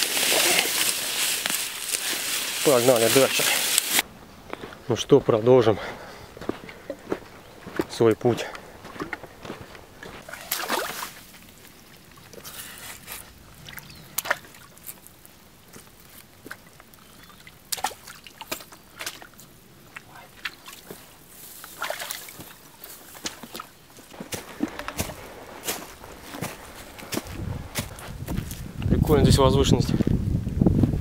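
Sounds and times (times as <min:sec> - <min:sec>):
footsteps through undergrowth: 0:00.0 - 0:13.3, 0:20.5 - 0:28.8.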